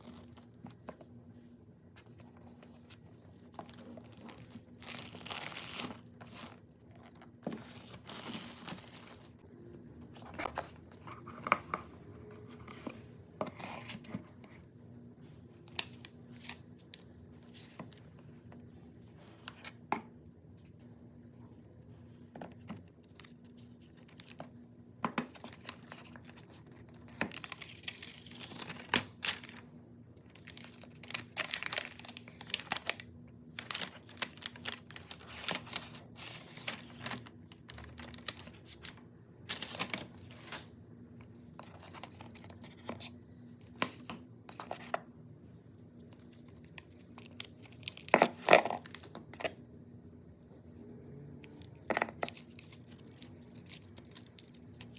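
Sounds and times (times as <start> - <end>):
paper and plastic crinkling: 2.0 - 9.4, 25.2 - 40.8, 46.1 - 49.6, 51.6 - 54.9.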